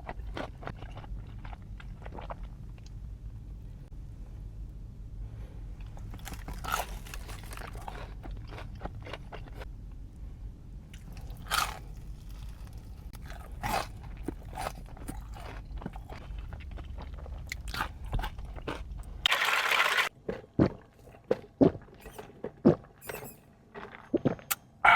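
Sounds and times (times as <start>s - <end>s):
low steady hum: 0.0s - 24.9s
crunching bites of fried chicken: 6.0s - 9.6s, 11.0s - 18.9s.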